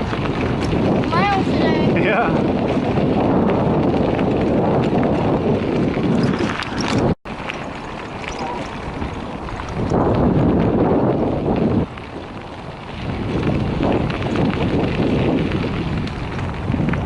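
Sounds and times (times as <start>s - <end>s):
bicycle tyre rumble: 0.0s - 17.0s
wind rushing over microphone: 0.0s - 17.0s.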